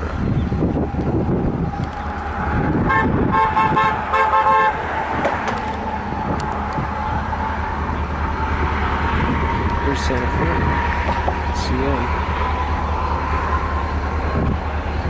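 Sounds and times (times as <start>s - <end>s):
wind rumble on microphone: 0.0s - 15.0s
locomotive horn blasts: 2.7s - 5.0s.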